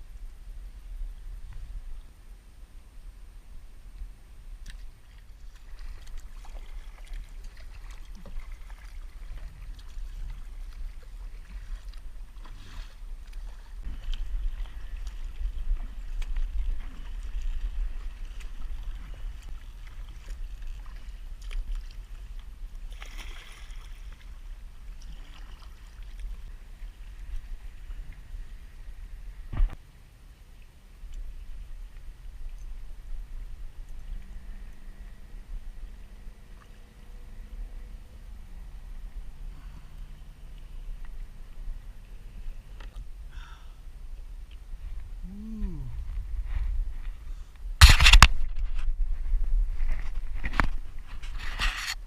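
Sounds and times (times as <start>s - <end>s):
water lapping against hull: 0.1s - 52.0s
steady low rumble: 25.8s - 51.2s.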